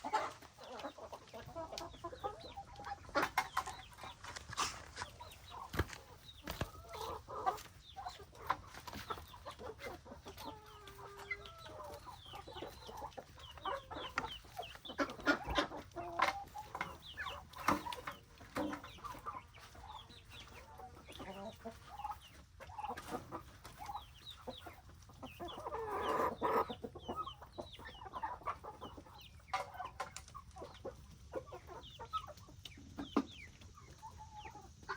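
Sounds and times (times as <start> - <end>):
chickens clucking and calling: 0.0 - 34.9.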